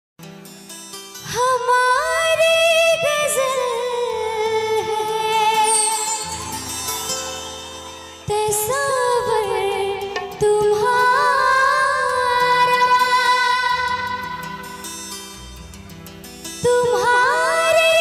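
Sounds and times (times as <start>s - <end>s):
high voice singing: 1.3s - 14.8s
backing music: 5.1s - 17.1s.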